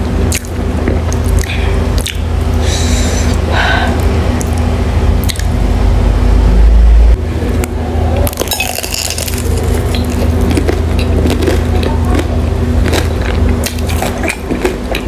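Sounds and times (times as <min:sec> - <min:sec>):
loud low hum: 0:00.0 - 0:15.0
person chewing food: 0:00.3 - 0:04.6, 0:07.5 - 0:15.0.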